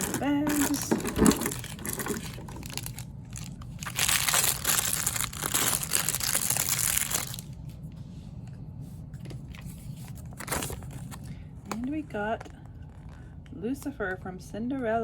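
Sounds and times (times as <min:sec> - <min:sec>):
plastic packaging crinkling: 0:00.0 - 0:07.6.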